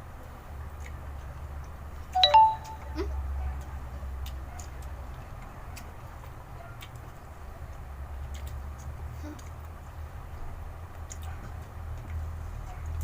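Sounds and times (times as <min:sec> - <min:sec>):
chewing clicks: 0:00.0 - 0:02.1, 0:03.4 - 0:13.0
low steady hum: 0:02.2 - 0:03.6.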